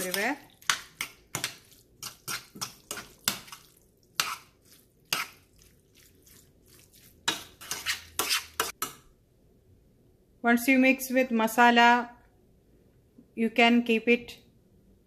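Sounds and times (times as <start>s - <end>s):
utensil scraping a pan: 0.0s - 8.9s.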